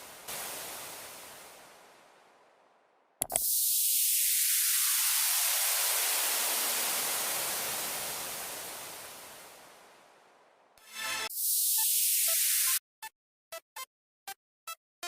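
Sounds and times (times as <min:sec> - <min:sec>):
sharp click: 0:03.2 - 0:03.5.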